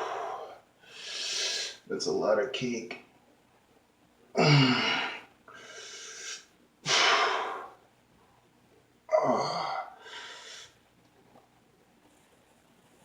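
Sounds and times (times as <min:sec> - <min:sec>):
man grunting: 0:04.4 - 0:05.2, 0:09.1 - 0:10.0
man breathing hard: 0:04.4 - 0:07.8, 0:09.4 - 0:10.8.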